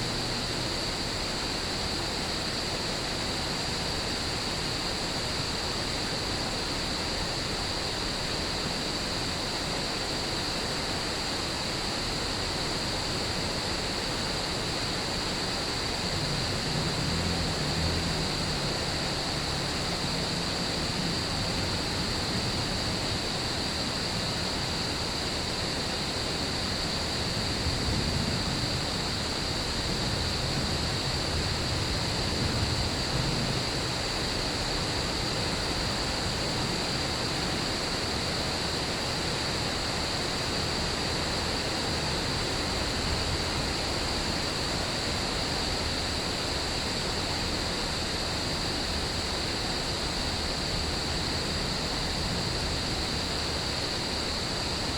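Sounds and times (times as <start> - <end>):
crickets trilling: 0.0 - 54.9
rain hissing: 11.8 - 47.9.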